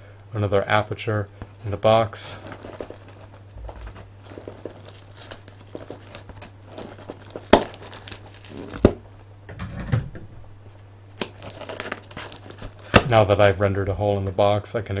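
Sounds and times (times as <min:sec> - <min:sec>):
packaging crinkling: 0:01.5 - 0:09.1, 0:10.7 - 0:13.2
cardboard tearing: 0:01.6 - 0:09.0, 0:11.2 - 0:13.2.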